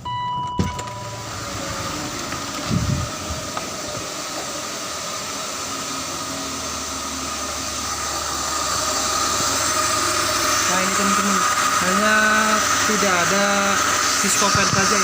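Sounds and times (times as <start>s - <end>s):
car engine idling: 0.0s - 11.7s.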